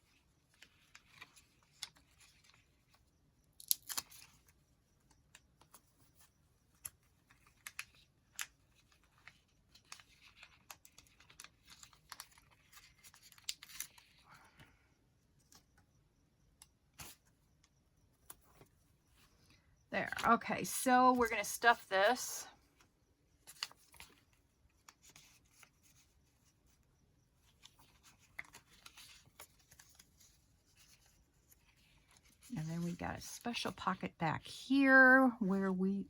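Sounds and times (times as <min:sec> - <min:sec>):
paper rustling: 0:05.6 - 0:14.2, 0:27.4 - 0:33.8.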